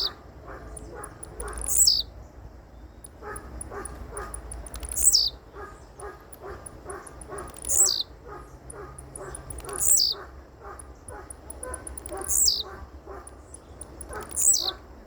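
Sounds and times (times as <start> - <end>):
lower repeated bird call: 0.0 - 2.1, 2.9 - 14.9
quick high bird chirps: 0.9 - 2.1, 3.4 - 6.1, 6.8 - 10.3, 11.6 - 12.7, 13.6 - 14.8.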